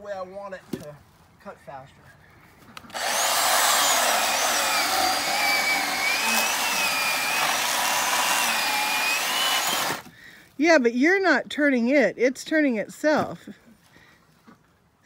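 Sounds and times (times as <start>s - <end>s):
electric chainsaw cutting log: 2.9s - 10.1s.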